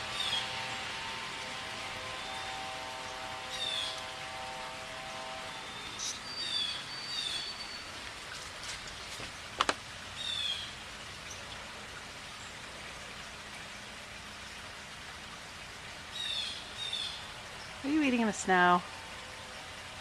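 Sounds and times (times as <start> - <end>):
bird chirping: 5.8 - 8.0.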